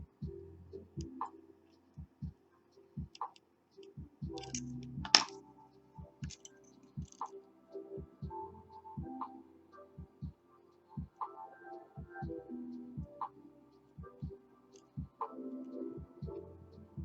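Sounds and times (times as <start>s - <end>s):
lock pick clicks and taps: 4.4s - 5.3s.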